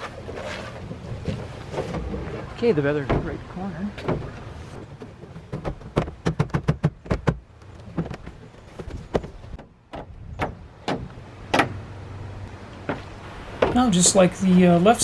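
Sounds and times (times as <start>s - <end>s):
plastic panel knocks and clatter: 5.5s - 7.4s.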